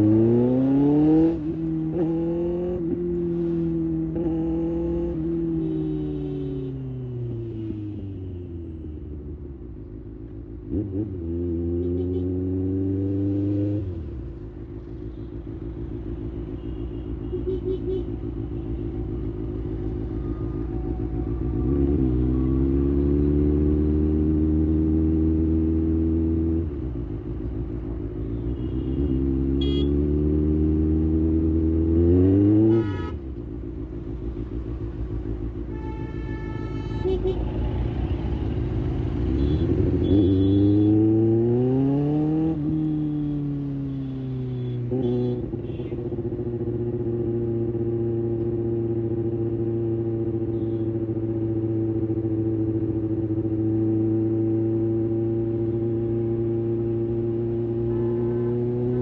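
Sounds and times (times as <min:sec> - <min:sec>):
motorcycle engine accelerating: 0:19.2 - 0:27.5.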